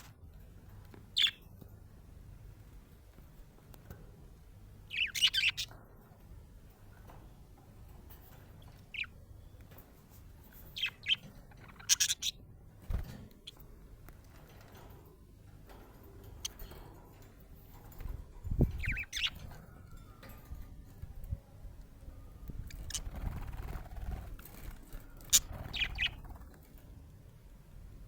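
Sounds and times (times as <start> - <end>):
budgie chirping: 1.2 - 1.4, 4.9 - 5.7, 10.8 - 12.4, 18.8 - 19.4, 25.3 - 26.3.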